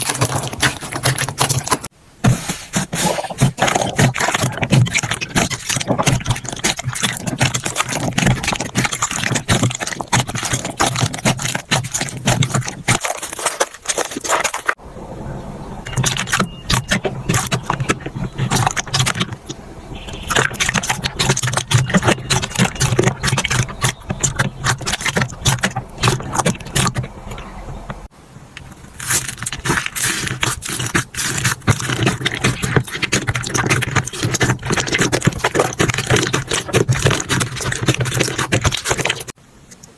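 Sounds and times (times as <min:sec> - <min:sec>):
slime crackling and popping: 0:03.5 - 0:14.8, 0:20.0 - 0:27.0, 0:28.9 - 0:39.4.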